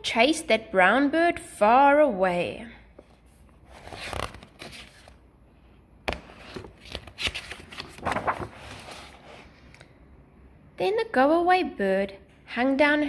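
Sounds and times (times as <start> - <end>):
paper page rustling: 3.2 - 5.2, 6.1 - 9.5
sharp paper crackle: 6.5 - 9.1.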